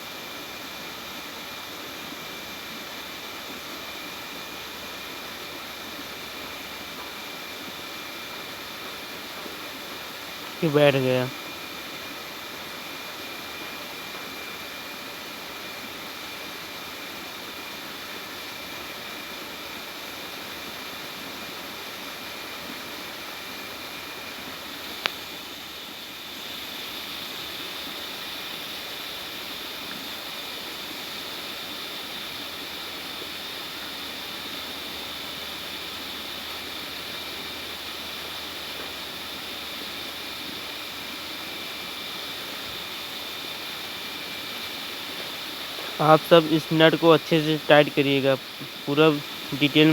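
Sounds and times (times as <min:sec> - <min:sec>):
steady background hiss: 0:00.0 - 0:49.9.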